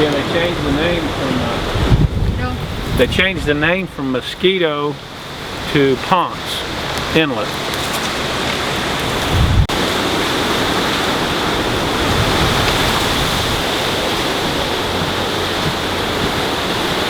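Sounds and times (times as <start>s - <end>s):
steady rushing noise: 0.0s - 17.0s.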